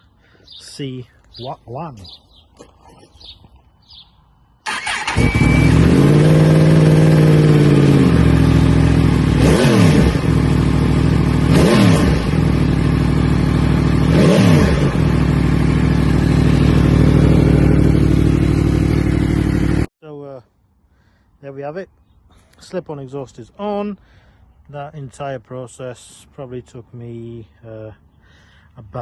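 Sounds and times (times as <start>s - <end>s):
motorcycle engine revving and idling: 4.7s - 19.9s.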